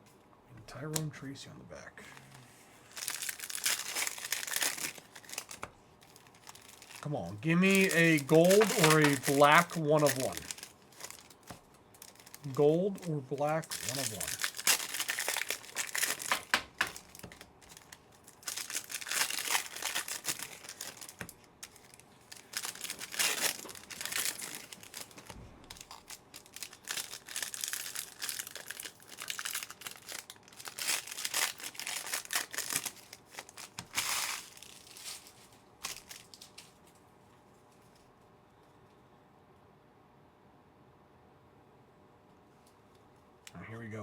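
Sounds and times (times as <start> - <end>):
card pack wrappers crinkling: 2.1 - 36.9.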